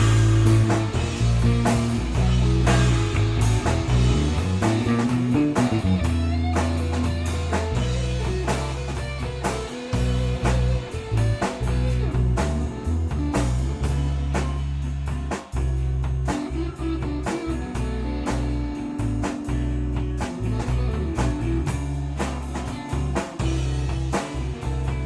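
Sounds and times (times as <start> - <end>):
steady drum hits: 0.0 - 16.6
rock band playing live: 0.0 - 25.0
sustained bass guitar notes: 0.0 - 25.0.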